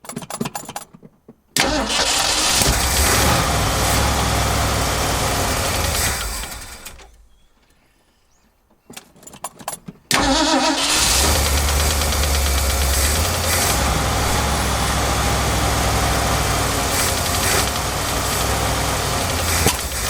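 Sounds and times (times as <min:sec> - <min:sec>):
truck engine running: 0:01.6 - 0:07.0, 0:10.2 - 0:20.0.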